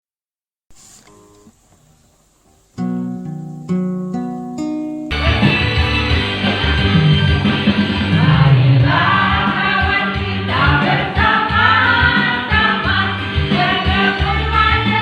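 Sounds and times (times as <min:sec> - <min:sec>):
guitar and bass: 0:02.8 - 0:15.0
voices singing together: 0:05.1 - 0:15.0.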